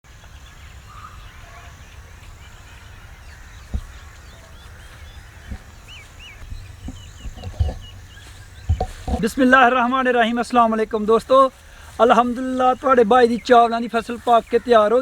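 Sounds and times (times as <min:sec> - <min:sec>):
small birds chirping: 0:00.1 - 0:15.0
short thumps: 0:03.6 - 0:13.0.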